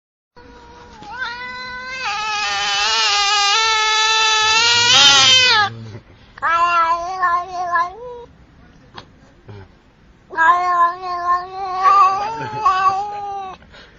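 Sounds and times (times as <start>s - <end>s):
cat meowing: 0.4s - 5.8s, 6.4s - 8.3s, 10.3s - 13.6s.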